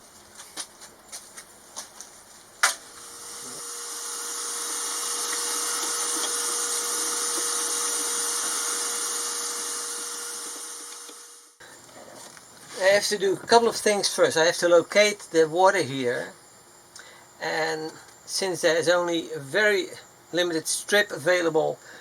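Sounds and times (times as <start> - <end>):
vacuum cleaner running: 2.9 - 11.6.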